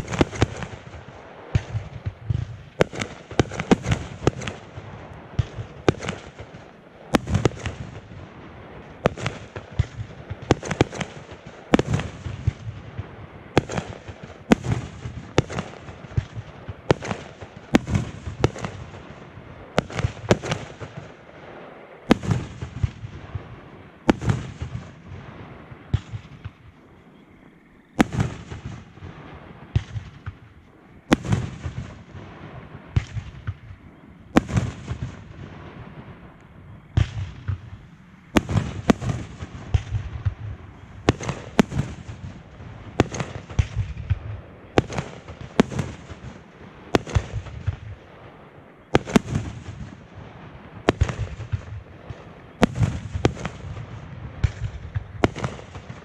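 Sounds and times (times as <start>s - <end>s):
firework crackling: 0.0s - 27.1s, 27.8s - 56.0s
firework bangs: 0.0s - 56.0s.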